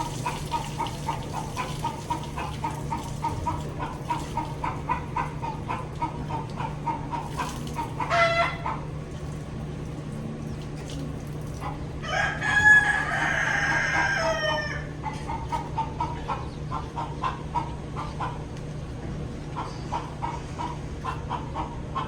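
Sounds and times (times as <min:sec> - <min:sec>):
soft clucking: 0:00.0 - 0:09.0, 0:13.0 - 0:22.0
steady low hum: 0:00.0 - 0:22.0
rooster crowing: 0:12.0 - 0:15.0.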